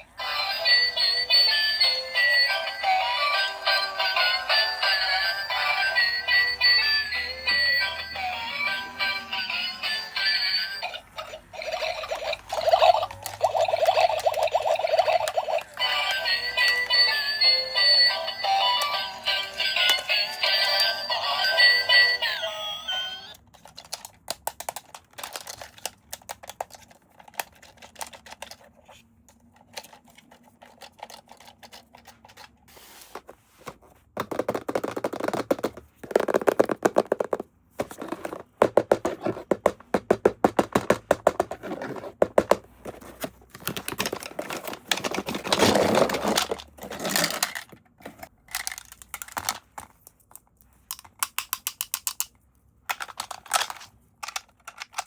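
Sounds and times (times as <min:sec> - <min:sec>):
thunks and scrapes of packaging: 0:41.5 - 0:47.4.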